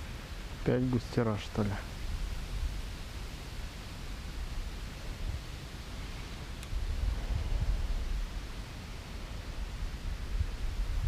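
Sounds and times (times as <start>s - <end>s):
faint click: 6.6s - 6.8s
wind buffeting microphone: 6.6s - 11.0s.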